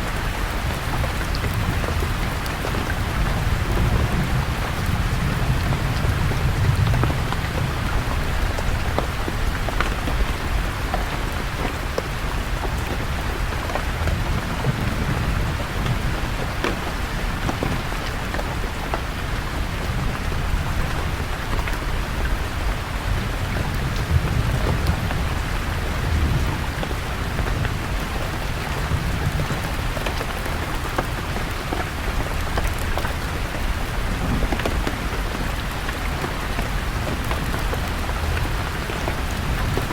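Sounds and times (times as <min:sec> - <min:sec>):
rain falling on leaves: 0:00.0 - 0:39.9
low thunder rumbles: 0:00.1 - 0:11.6, 0:12.3 - 0:29.9.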